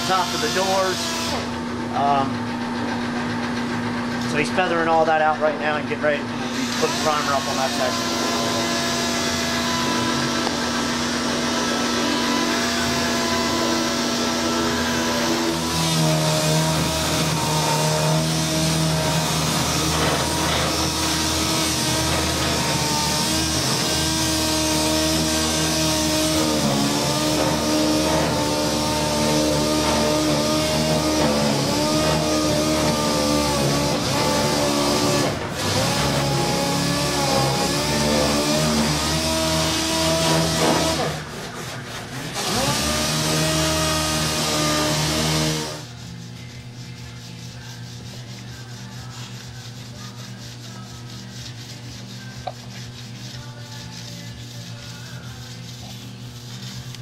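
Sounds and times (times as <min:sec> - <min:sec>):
power sander running: 0:00.0 - 0:02.4, 0:04.2 - 0:41.2, 0:42.4 - 0:45.9.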